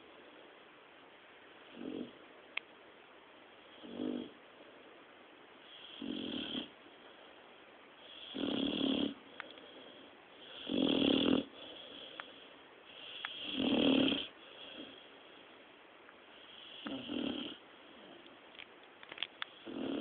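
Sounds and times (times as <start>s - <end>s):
dog snoring: 1.6s - 2.2s, 3.7s - 4.4s, 5.7s - 6.8s, 8.0s - 15.1s, 16.3s - 18.3s, 19.5s - 20.0s.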